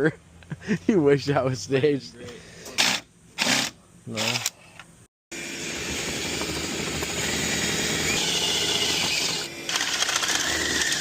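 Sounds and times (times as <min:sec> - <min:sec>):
power tool running: 0:02.8 - 0:04.5, 0:05.3 - 0:11.0.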